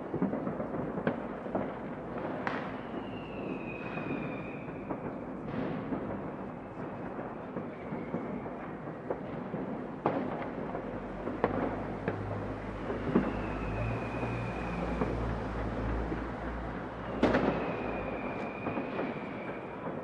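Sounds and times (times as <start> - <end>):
distant fireworks rumble: 0.0 - 20.0
sharp firework cracks: 0.0 - 20.0
whistling rocket: 2.3 - 9.3, 11.5 - 20.0.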